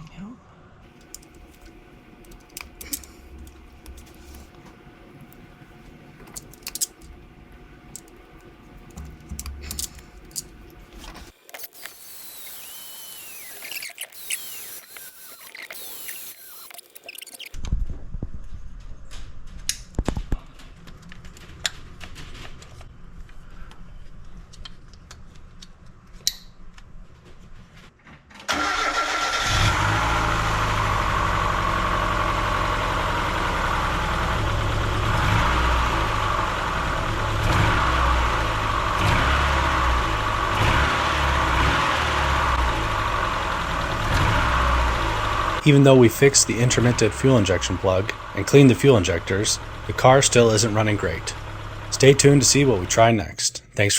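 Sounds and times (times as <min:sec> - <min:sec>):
car engine starting and running: 0:00.8 - 0:11.3, 0:28.5 - 0:53.4.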